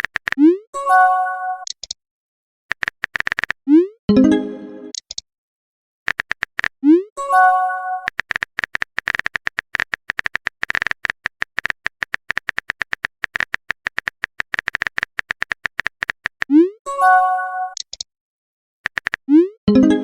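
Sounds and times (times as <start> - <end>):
phone keyboard tapping clicks: 0.0 - 0.4, 2.7 - 3.6, 6.1 - 6.7, 8.0 - 16.5, 18.9 - 19.3
message chime: 4.1 - 4.9, 19.7 - 20.0.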